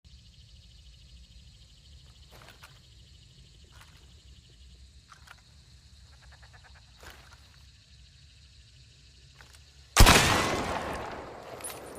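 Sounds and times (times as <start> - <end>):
high insect-like buzz: 0.1 - 10.1
distant rifle shots: 10.0 - 11.9.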